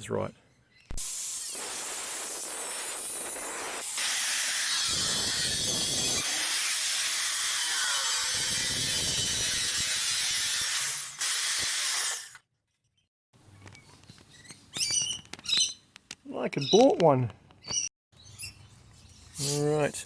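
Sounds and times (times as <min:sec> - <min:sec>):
power tool grinding steel: 0:01.0 - 0:12.4.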